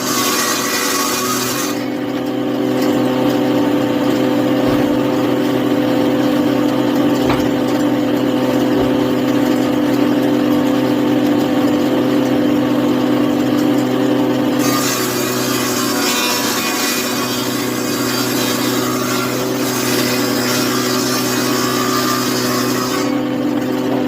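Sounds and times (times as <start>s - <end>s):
power saw motor running: 0.0s - 24.0s.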